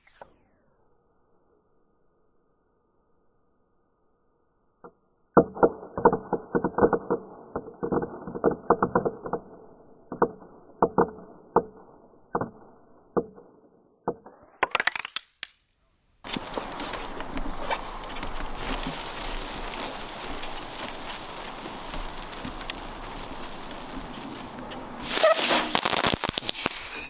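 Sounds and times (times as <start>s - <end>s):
crackling fireworks popping: 16.2s - 27.0s
steady rushing noise: 16.3s - 27.0s.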